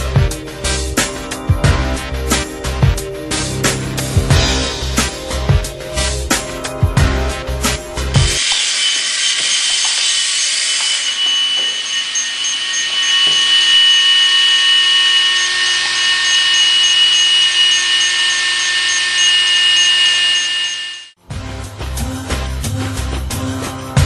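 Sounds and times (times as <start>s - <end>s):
toy fan high-pitched whir: 8.4s - 21.2s.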